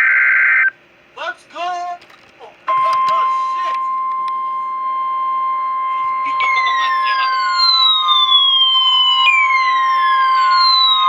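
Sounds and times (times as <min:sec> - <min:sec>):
steady high alarm beep: 0:02.7 - 0:11.0
siren tone gliding downward: 0:03.7 - 0:11.0.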